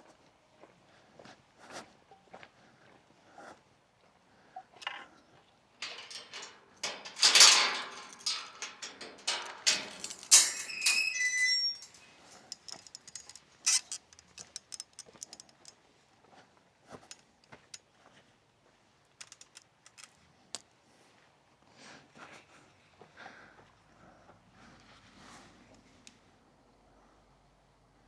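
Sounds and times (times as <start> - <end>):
knocks and rattles: 5.8 - 15.7
short high squeak: 10.4 - 12.0.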